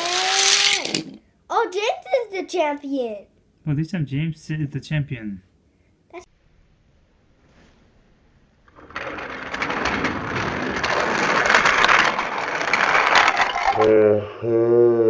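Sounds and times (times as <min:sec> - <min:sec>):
toy trains and wooden track clattering: 0:00.0 - 0:01.2, 0:08.7 - 0:13.9.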